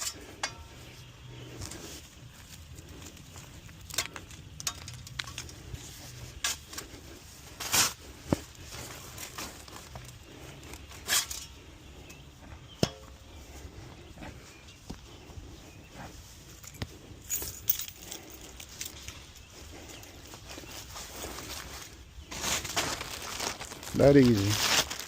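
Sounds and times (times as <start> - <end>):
shovel scraping into soil: 4.8 - 11.6.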